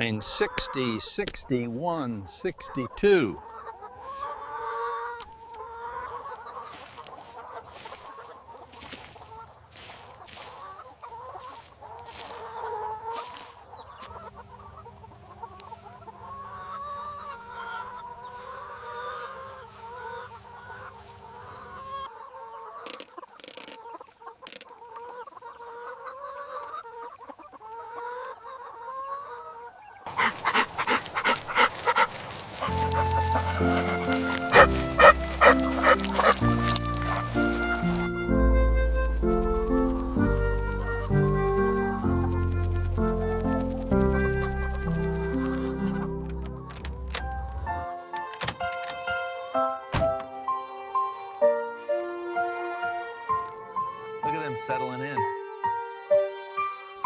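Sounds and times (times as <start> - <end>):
hens clucking: 0.0 - 38.7, 39.9 - 51.8.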